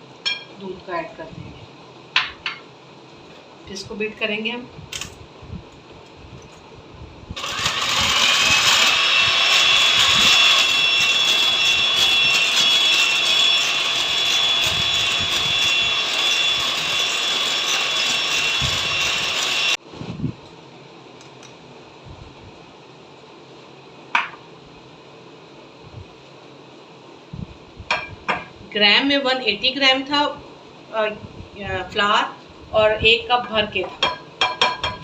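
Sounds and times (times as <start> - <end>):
electric mixer whining: 7.4 - 19.8.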